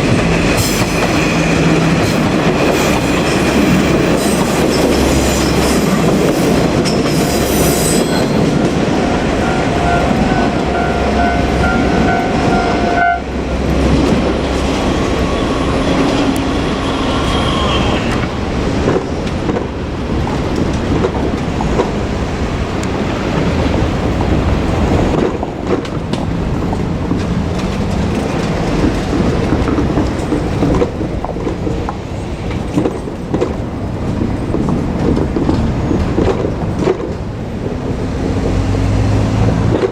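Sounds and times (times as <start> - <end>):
train wheels clattering: 0.0 - 39.9
crossing warning tone: 3.3 - 18.4.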